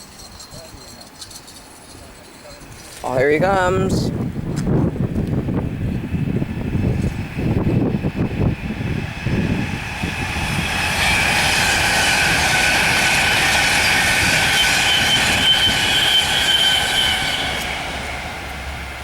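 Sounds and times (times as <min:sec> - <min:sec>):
train wheels rumbling on rail: 0:00.0 - 0:19.0
train brakes squealing: 0:08.6 - 0:19.0.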